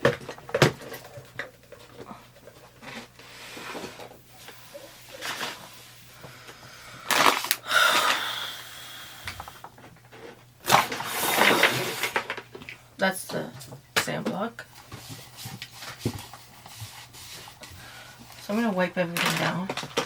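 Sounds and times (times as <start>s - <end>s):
objects being handled and moved: 0.0s - 7.6s, 13.4s - 20.0s.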